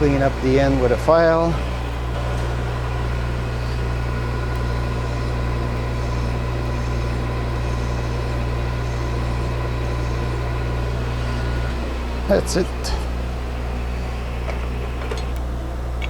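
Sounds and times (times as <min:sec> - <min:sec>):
metal lathe humming: 0:00.0 - 0:16.0.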